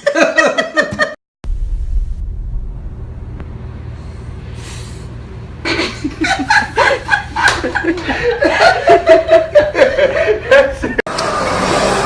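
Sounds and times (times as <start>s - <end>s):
people laughing: 0.0s - 1.2s, 5.7s - 11.0s
low steady rumble: 1.4s - 9.7s.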